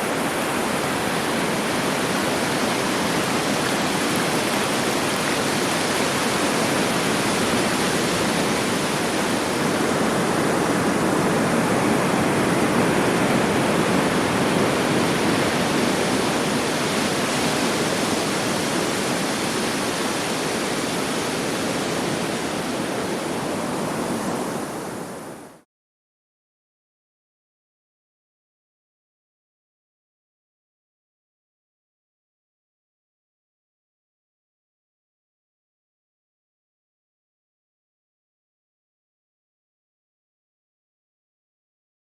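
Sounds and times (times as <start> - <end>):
sea surf rushing: 0.0 - 25.6.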